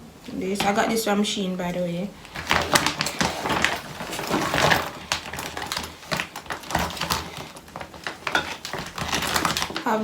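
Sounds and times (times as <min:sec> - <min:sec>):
hair-styling tools clicking and knocking: 0:02.3 - 0:09.8.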